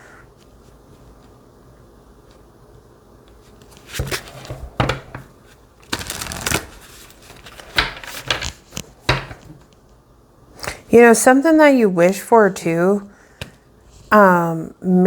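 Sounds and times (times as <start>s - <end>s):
cards rustling and slapping: 5.8s - 8.9s.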